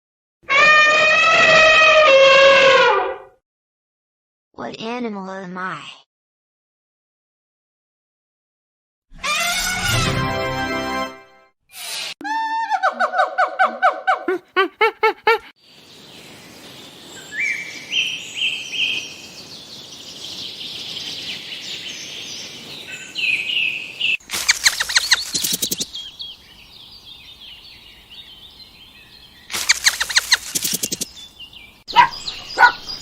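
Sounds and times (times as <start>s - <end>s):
outdoor background noise: 12.3s - 33.0s
birds chirping: 15.6s - 33.0s
bird chattering calls: 24.3s - 26.2s, 29.4s - 31.3s.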